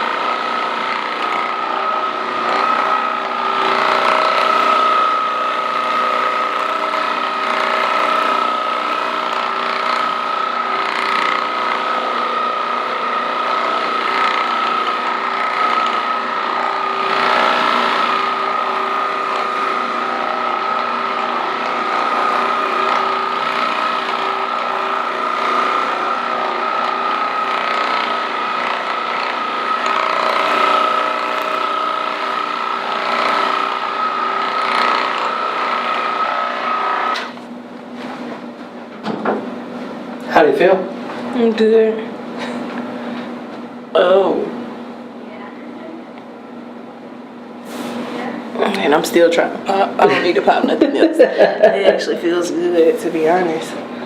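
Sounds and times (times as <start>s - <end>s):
massage gun buzzing hum: 0.0s - 54.0s.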